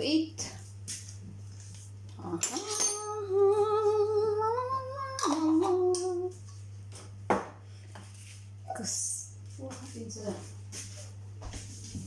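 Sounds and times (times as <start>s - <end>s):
person humming: 2.2s - 6.4s.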